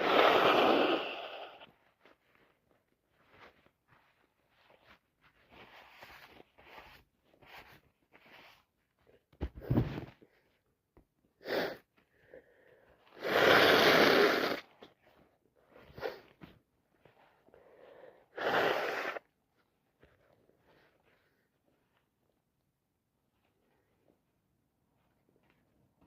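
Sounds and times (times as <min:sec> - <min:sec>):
person sniffing and breathing: 0:00.0 - 0:01.7, 0:11.4 - 0:14.9, 0:15.6 - 0:19.3.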